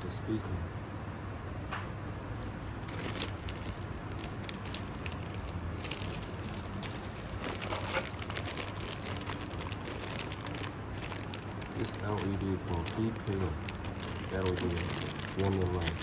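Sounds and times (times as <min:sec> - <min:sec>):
crackling of packaging handled: 0:02.4 - 0:16.0.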